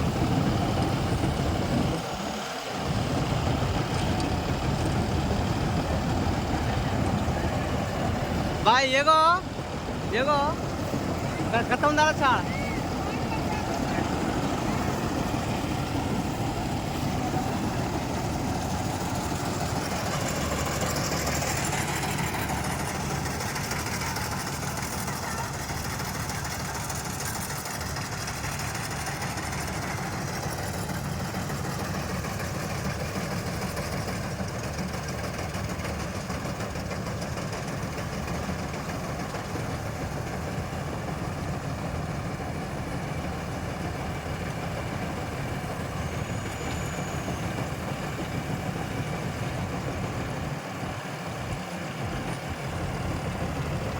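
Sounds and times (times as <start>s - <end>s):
combine harvester diesel engine running: 0.0s - 53.9s.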